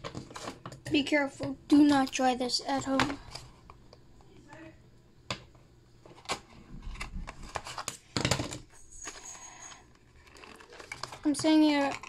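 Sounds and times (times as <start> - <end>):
scissors cutting plastic packaging: 10.2 - 12.0.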